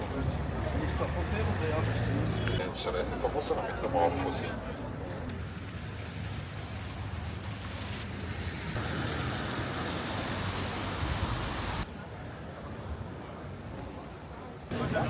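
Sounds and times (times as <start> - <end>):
passing vehicles: 0.0 - 11.9, 14.7 - 15.0.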